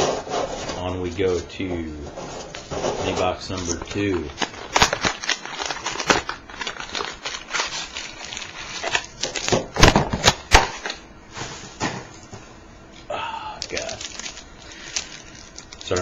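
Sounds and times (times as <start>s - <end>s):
packaging crackling and clicking: 2.5s - 11.0s, 13.6s - 16.0s.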